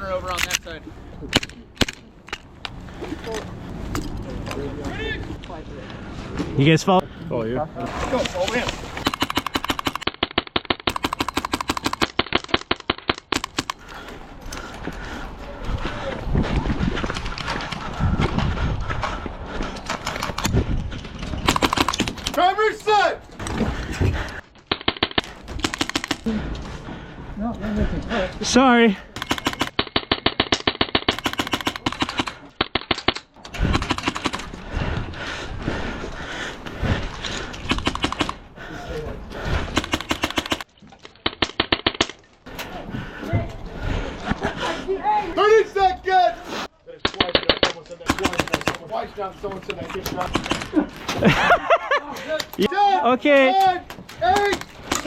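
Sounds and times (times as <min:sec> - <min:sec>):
airsoft rifle firing: 0:09.0 - 0:13.8, 0:21.4 - 0:22.3, 0:24.7 - 0:26.3, 0:29.2 - 0:34.5, 0:37.7 - 0:38.4, 0:39.8 - 0:40.7, 0:47.0 - 0:48.8
airsoft rifle firing full-auto: 0:21.4 - 0:22.1, 0:29.2 - 0:32.8.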